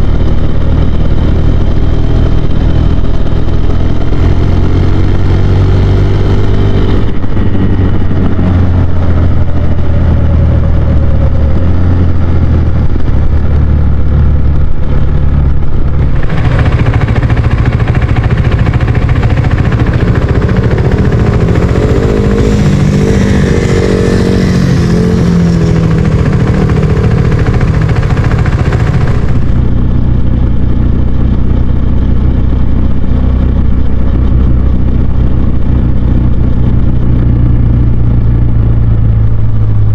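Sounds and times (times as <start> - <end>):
motorcycle engine running: 0.0 - 39.9
broad rushing noise: 6.3 - 30.6.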